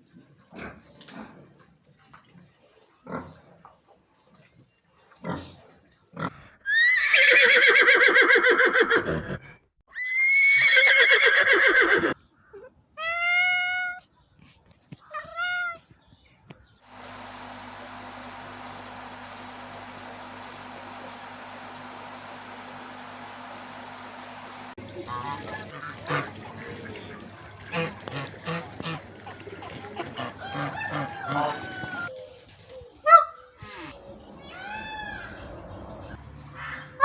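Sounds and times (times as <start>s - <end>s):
pig grunting: 5.2s - 6.6s
horse whinnying: 6.7s - 12.2s
hiss with low hum: 16.9s - 32.1s.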